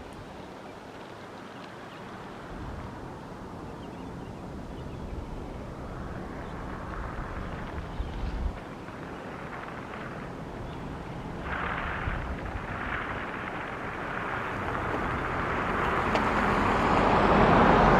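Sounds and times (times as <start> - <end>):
wind rumbling on microphone: 0.0 - 17.9
rushing noise: 4.6 - 17.9.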